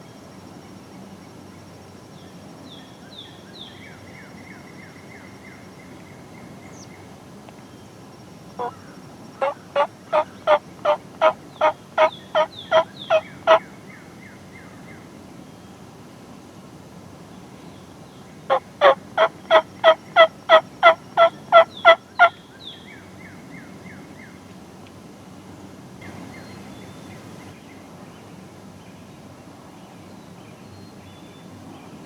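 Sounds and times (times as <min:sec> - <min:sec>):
turkey yelps: 0:08.6 - 0:08.8, 0:09.4 - 0:13.6, 0:18.5 - 0:22.3.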